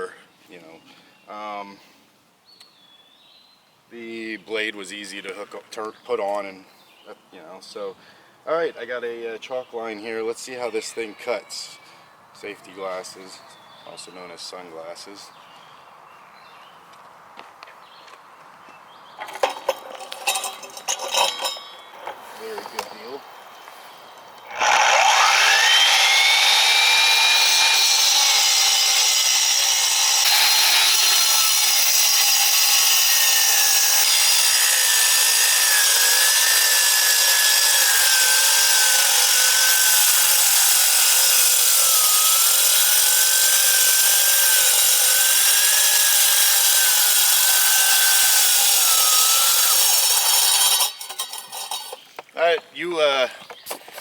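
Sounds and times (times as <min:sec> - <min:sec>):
saw blade grinding concrete: 0:19.4 - 0:23.4, 0:24.3 - 0:52.2
concrete saw motor whine: 0:24.4 - 0:52.0.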